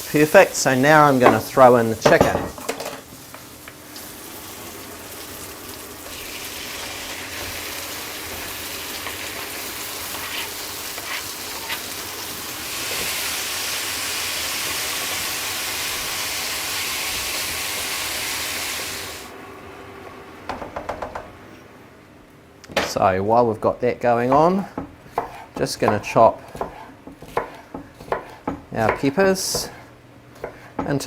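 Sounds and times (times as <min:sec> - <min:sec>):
chicken sizzling in a pan: 0:03.0 - 0:19.3.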